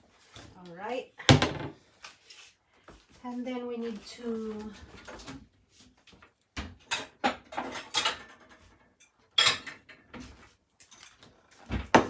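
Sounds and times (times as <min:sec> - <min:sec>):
dishes and utensils clattering: 0:06.6 - 0:12.0.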